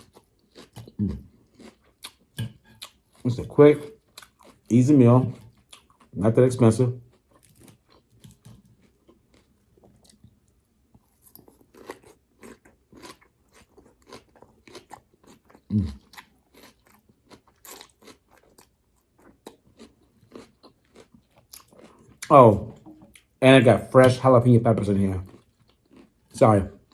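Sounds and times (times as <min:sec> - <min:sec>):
crunchy chewing of salad: 0:00.0 - 0:06.2, 0:07.0 - 0:23.4, 0:25.2 - 0:26.9.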